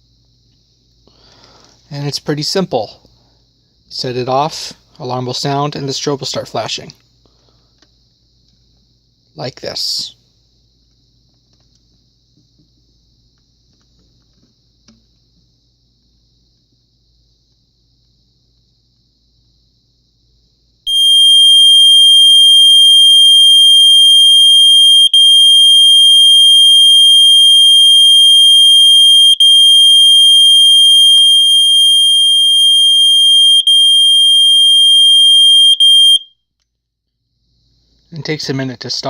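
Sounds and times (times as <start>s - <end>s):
smoke detector alarm tone: 20.9s - 36.4s.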